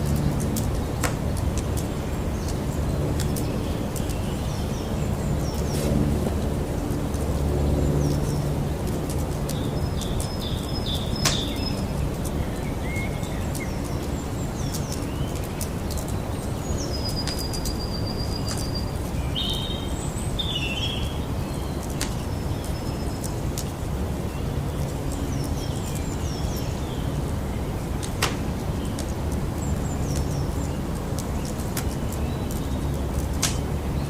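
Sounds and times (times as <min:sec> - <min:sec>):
campfire crackling and popping: 0:00.0 - 0:12.5, 0:28.0 - 0:33.9
small birds chirping: 0:00.0 - 0:34.0.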